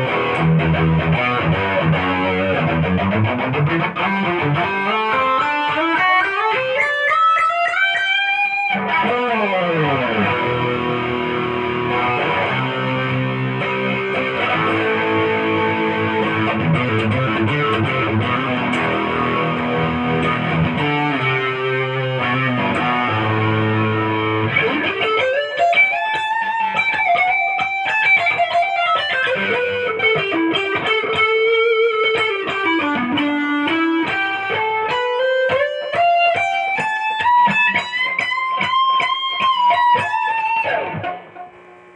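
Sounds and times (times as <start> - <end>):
electric guitar playing: 0.0 - 41.9.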